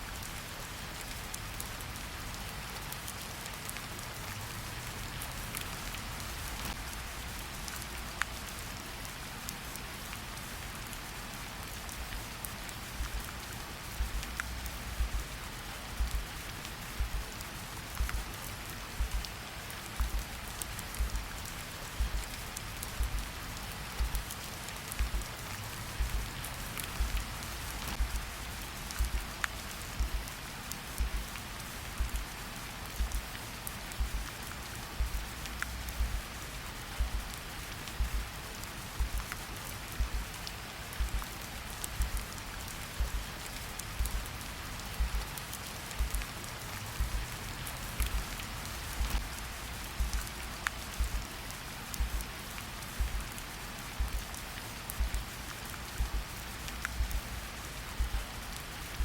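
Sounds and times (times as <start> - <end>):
steady rain hiss: 0.0 - 59.0
raindrops ticking: 0.1 - 59.0
low heartbeat thumps: 13.0 - 13.2, 14.0 - 15.3, 16.0 - 16.3, 17.0 - 17.3, 18.0 - 18.3, 19.0 - 19.3, 20.0 - 20.3, 21.0 - 21.3, 22.0 - 22.3, 23.0 - 23.3, 24.0 - 24.3, 25.0 - 25.3, 26.0 - 26.3, 27.0 - 27.3, 27.9 - 28.3, 29.0 - 29.3, 30.0 - 30.3, 31.0 - 31.3, 32.0 - 32.3, 33.0 - 33.3, 34.0 - 34.3, 35.0 - 35.3, 35.9 - 36.3, 37.0 - 37.3, 38.0 - 38.3, 39.0 - 39.3, 40.0 - 40.3, 41.0 - 41.3, 42.0 - 42.3, 43.0 - 43.3, 44.0 - 44.3, 45.0 - 45.3, 46.0 - 46.3, 47.0 - 47.3, 48.0 - 48.3, 49.0 - 49.3, 50.0 - 50.3, 51.0 - 51.3, 52.0 - 52.3, 53.0 - 53.3, 54.0 - 54.3, 55.0 - 55.4, 56.0 - 56.3, 57.0 - 57.3, 58.0 - 58.3.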